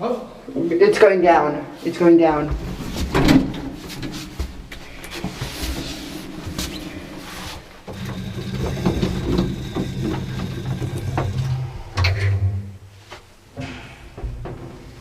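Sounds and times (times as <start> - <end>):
lift motor hum: 5.8 - 12.9.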